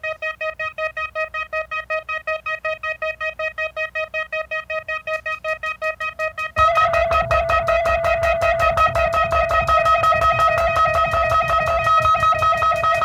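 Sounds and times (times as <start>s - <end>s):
pulsing synthesizer note: 6.5s - 13.0s
punk band playing: 6.6s - 13.0s.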